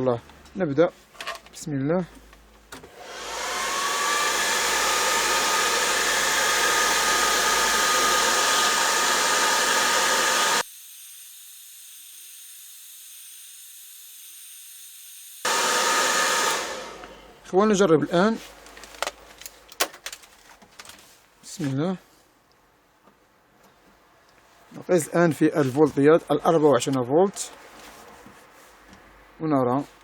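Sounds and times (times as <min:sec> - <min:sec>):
hair dryer blowing: 0:02.8 - 0:10.7, 0:15.4 - 0:17.4.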